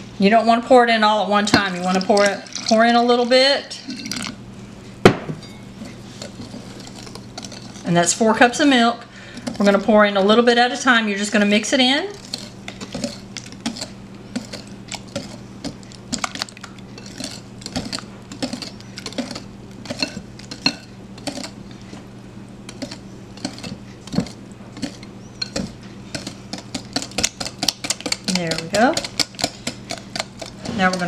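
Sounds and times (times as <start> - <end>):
steady low hum: 0.0 - 31.0
whisk scraping a mixing bowl: 5.8 - 10.3, 11.3 - 22.1, 22.7 - 31.0.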